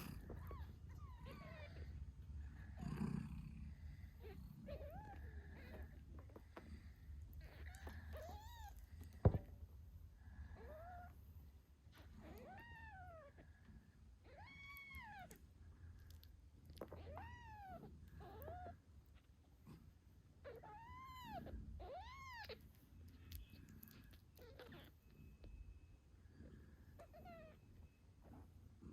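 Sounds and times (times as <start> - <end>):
kittens meowing: 0.0 - 2.3, 4.1 - 9.5, 12.0 - 13.6, 14.2 - 15.4, 16.7 - 19.3, 20.4 - 25.5, 27.0 - 27.6.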